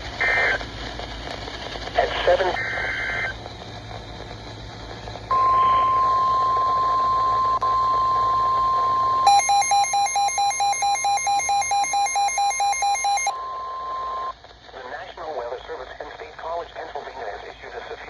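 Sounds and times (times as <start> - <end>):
steady alarm tone: 9.2 - 13.5
electronic alert beeping: 9.3 - 13.3.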